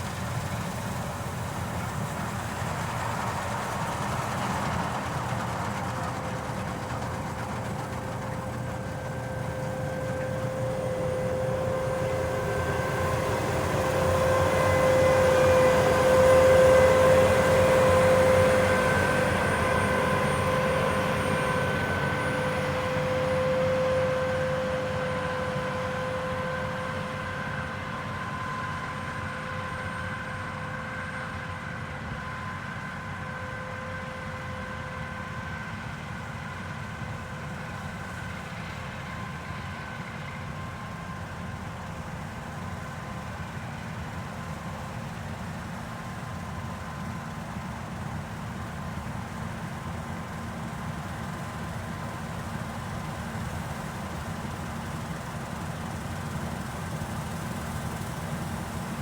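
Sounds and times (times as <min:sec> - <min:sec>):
high machine whine: 0:00.0 - 0:29.9.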